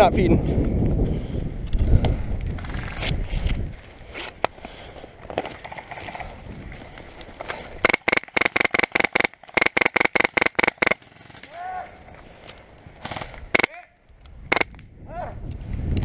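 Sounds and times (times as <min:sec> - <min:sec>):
airsoft gun rapid shots: 0:07.8 - 0:11.6, 0:13.0 - 0:13.8, 0:14.5 - 0:14.7.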